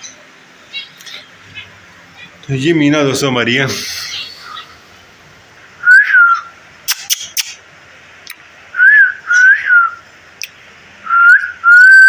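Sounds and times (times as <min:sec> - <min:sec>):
sharp clicks: 0:06.9 - 0:07.6.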